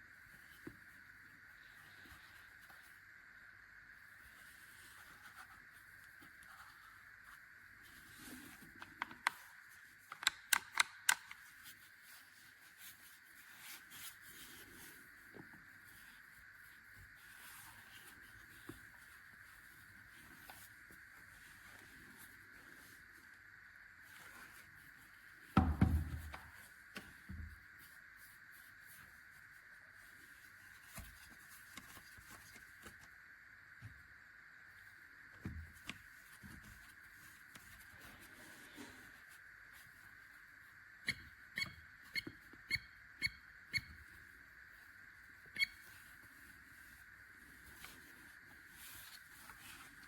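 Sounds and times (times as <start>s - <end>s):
sharp clicks: 10.1s - 11.4s.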